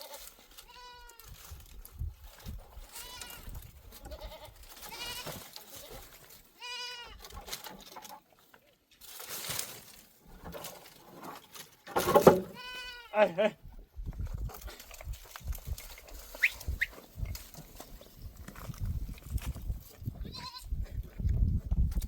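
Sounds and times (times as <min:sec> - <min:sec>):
rustling noise: 0:00.0 - 0:12.9, 0:14.0 - 0:22.0
goats bleating: 0:04.0 - 0:07.2, 0:12.5 - 0:13.6, 0:20.2 - 0:20.8.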